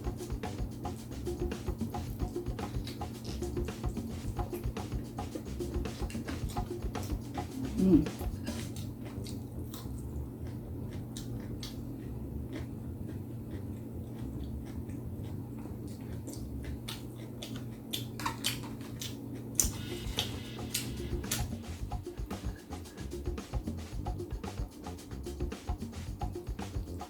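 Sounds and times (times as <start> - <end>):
mouth smacks: 1.8 - 23.8
close chewing and biting: 5.9 - 21.6.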